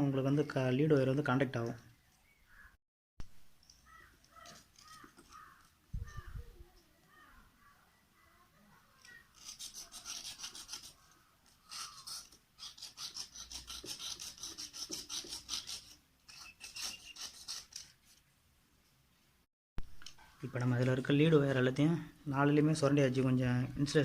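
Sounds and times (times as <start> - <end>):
knife scraping wire insulation: 4.0 - 5.7, 9.0 - 18.3.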